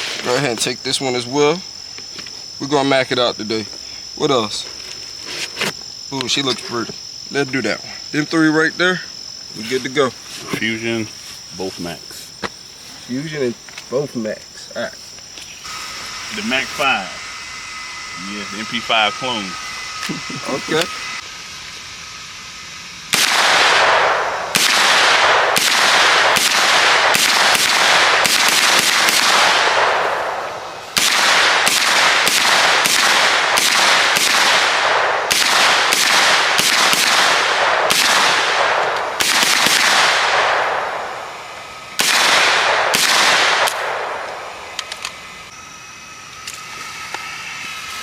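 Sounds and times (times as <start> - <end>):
pistol shots with ringing tail: 23.1 - 41.4, 42.0 - 44.6.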